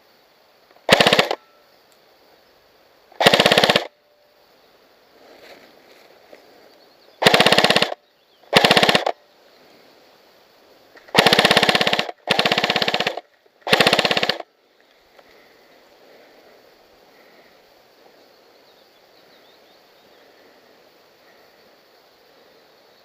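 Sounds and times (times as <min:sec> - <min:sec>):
airsoft gun full-auto bursts: 0:00.8 - 0:01.4, 0:03.2 - 0:04.0, 0:07.2 - 0:09.2, 0:11.1 - 0:14.5.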